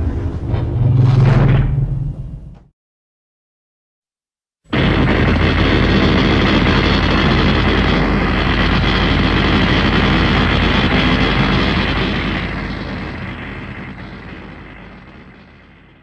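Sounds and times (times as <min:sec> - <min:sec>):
loud mechanical drone: 0:04.7 - 0:16.0.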